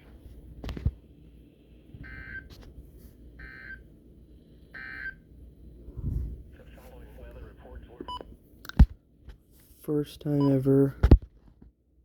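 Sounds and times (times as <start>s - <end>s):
low hum: 4.0s - 9.0s.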